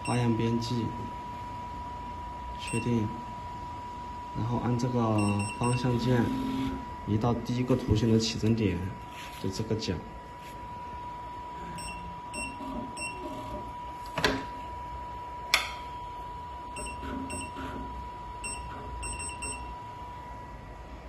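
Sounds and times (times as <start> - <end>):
short electronic key beeps: 18.4 - 19.7.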